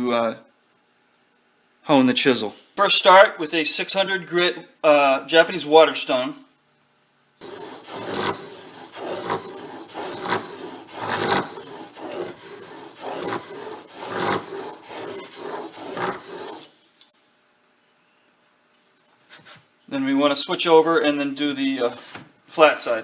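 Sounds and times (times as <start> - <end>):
chisel scraping on wet whetstone: 7.4 - 16.8.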